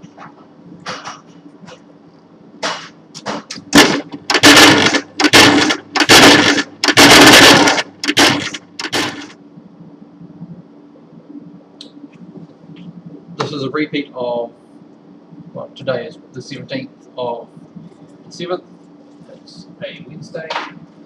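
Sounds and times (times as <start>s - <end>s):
instrument low hum: 0.0s - 21.0s
conveyor mechanism clattering: 2.6s - 9.4s.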